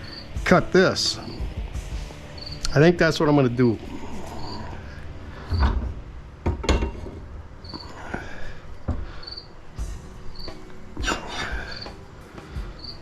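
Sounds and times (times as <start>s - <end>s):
insect chirping: 0.0s - 0.4s, 1.1s - 2.7s, 3.8s - 5.8s, 7.6s - 13.0s
metal pipe knocks and clunks: 5.5s - 7.8s, 8.8s - 9.2s.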